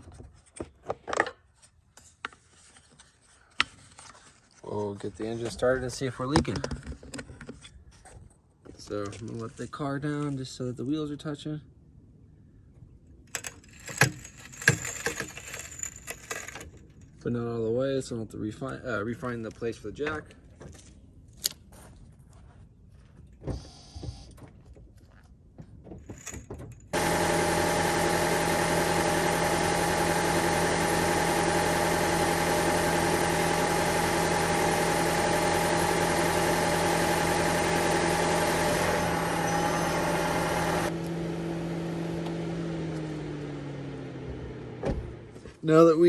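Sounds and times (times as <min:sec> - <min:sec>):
car engine starting and running: 0:27.0 - 0:45.6.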